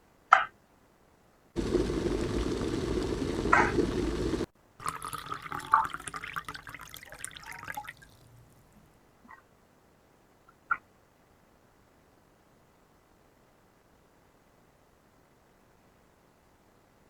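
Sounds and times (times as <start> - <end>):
water splashing: 1.6 - 8.8.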